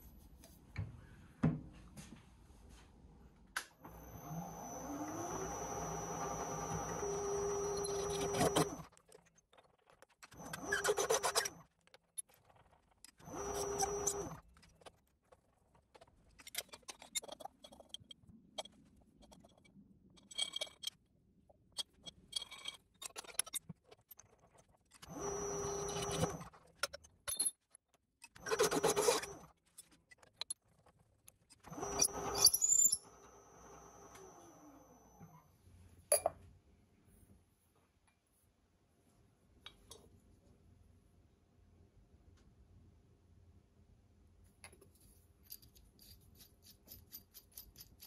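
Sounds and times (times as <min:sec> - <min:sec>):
metallic clinks and scrapes: 0:16.4 - 0:21.0, 0:21.8 - 0:23.8, 0:31.9 - 0:33.0, 0:44.7 - 0:48.0.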